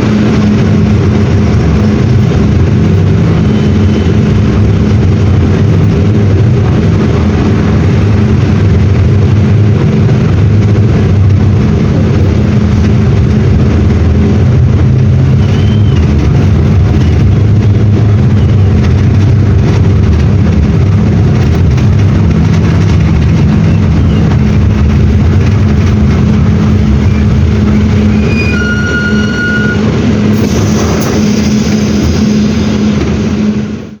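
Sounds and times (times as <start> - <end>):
diesel bus engine running: 0.0 - 34.0
brief high tone: 28.1 - 29.9.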